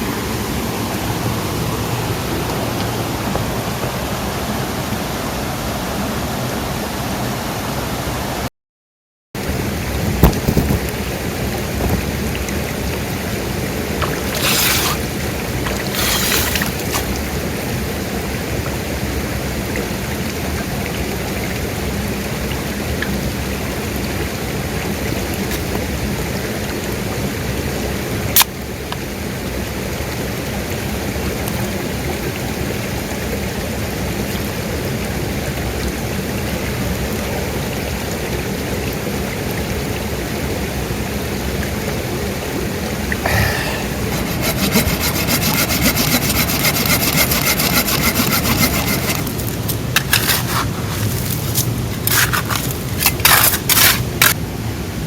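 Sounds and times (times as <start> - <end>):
water rushing: 9.5 - 27.4, 36.6 - 55.0
short rustling bursts: 14.0 - 17.3, 43.9 - 54.4.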